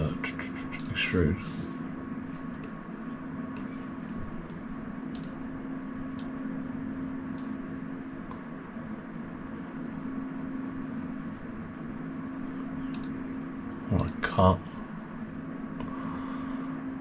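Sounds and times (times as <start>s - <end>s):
steady machine hum: 0.0s - 17.0s
computer mouse clicks: 0.8s - 1.0s, 4.5s - 5.4s, 12.8s - 13.2s.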